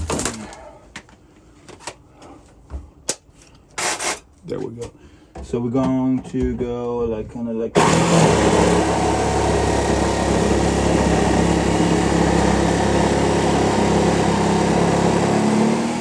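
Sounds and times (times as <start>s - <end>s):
power tool cutting wood: 3.8s - 4.2s, 7.8s - 16.0s.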